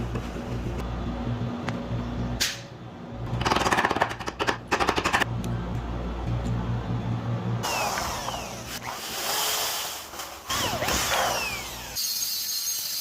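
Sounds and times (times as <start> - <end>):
low electric hum: 0.0 - 8.8.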